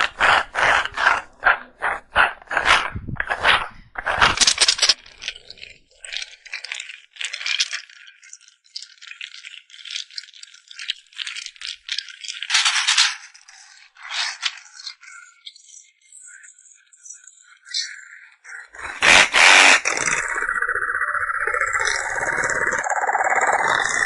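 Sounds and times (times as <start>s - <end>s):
rattling and scraping handling noises: 0.0s - 7.6s, 11.4s - 14.6s.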